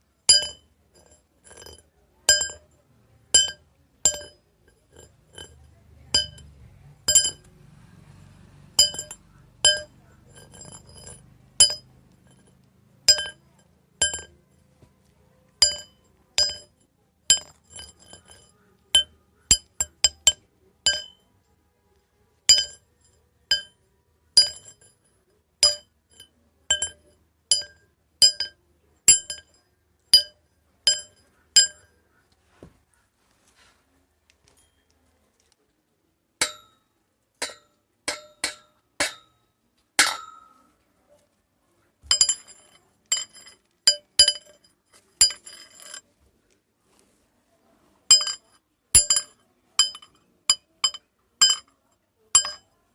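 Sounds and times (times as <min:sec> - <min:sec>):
metal rod being struck: 0:08.8 - 0:12.4, 0:36.4 - 0:36.8, 0:37.4 - 0:39.4, 0:40.0 - 0:40.6.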